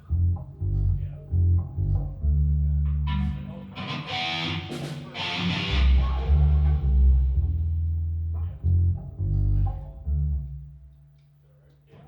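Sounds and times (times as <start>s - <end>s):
bass guitar playing low notes: 0.0s - 11.1s
electric guitar: 2.8s - 9.9s.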